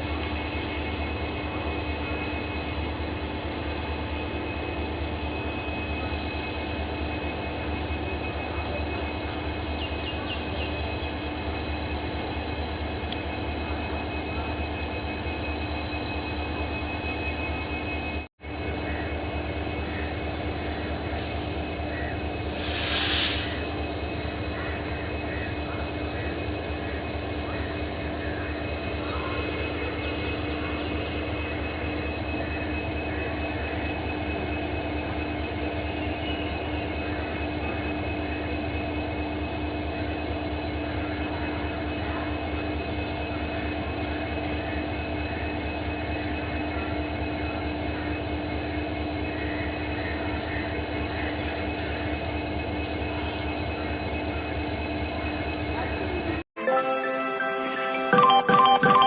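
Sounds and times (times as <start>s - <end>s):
brief loud hiss: 22.5s - 23.6s.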